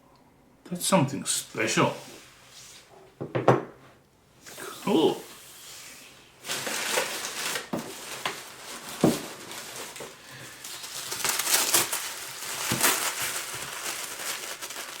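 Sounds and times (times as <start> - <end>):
wrapping material crinkling: 4.8 - 15.0.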